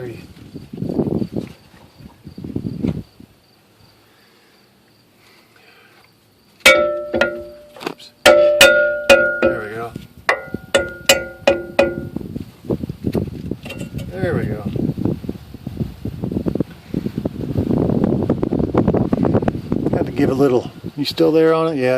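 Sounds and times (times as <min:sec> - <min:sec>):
hammer tapping on metal: 0:06.7 - 0:09.7, 0:10.3 - 0:12.2.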